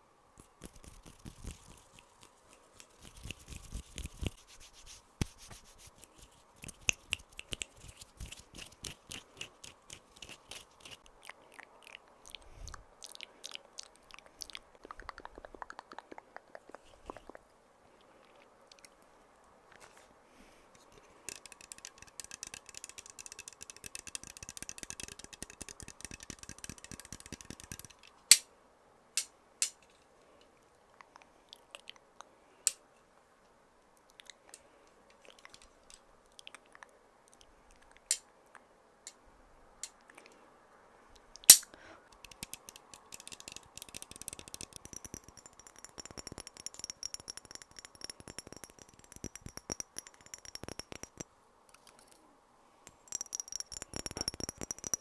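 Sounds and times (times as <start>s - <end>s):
scratching: 0.4s - 11.1s, 20.8s - 28.1s
thin high ringing: 21.1s - 27.9s, 42.2s - 51.3s, 52.9s - 55.0s
fast tapping: 21.3s - 28.0s, 42.2s - 51.2s, 53.1s - 55.0s
sharp clicks: 21.3s - 28.4s, 42.2s - 51.2s.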